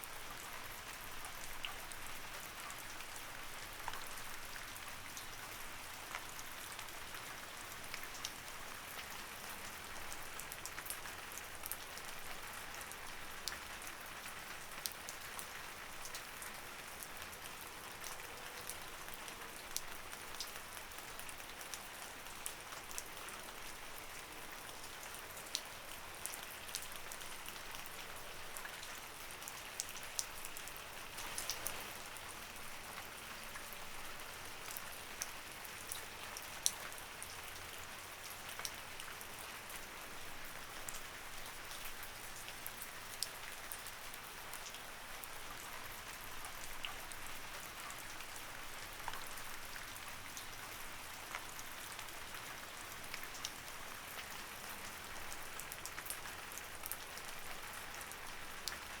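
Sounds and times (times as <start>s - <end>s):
light rain hiss: 0.0s - 59.0s.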